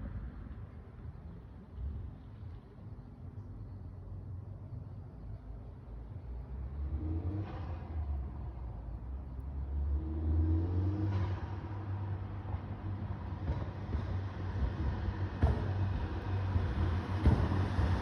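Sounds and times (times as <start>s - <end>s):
car engine rumbling and revving: 5.7s - 18.0s.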